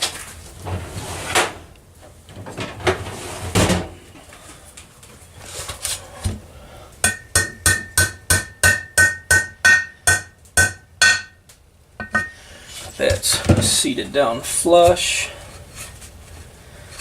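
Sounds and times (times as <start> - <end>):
hammer tapping metal plug: 7.0 - 11.4.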